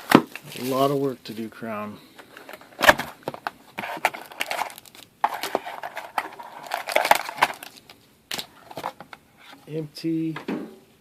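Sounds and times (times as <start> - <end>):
foil wrapper crinkling: 3.8 - 8.0.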